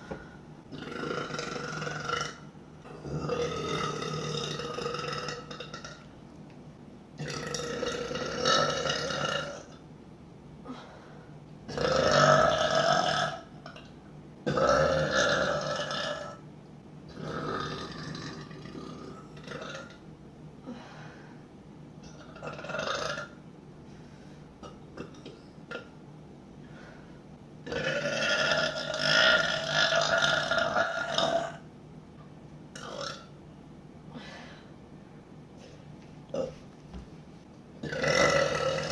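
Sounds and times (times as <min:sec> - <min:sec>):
woman burping loudly: 0:00.7 - 0:06.1, 0:07.2 - 0:09.8, 0:11.7 - 0:13.9, 0:14.5 - 0:16.4, 0:17.1 - 0:20.0, 0:22.1 - 0:23.4, 0:27.6 - 0:31.6, 0:32.8 - 0:33.3, 0:37.8 - 0:38.9.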